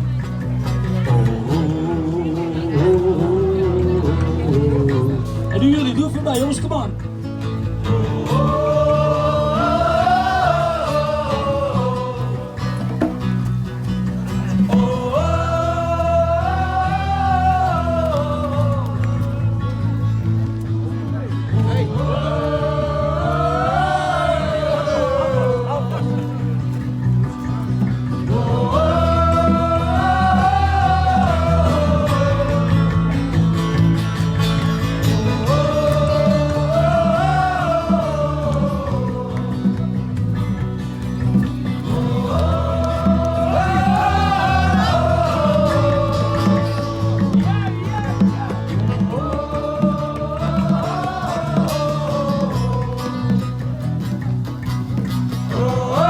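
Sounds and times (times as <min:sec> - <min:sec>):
acoustic guitar: 0:00.0 - 0:56.0
bass chords: 0:00.0 - 0:56.0
person singing: 0:55.5 - 0:56.0.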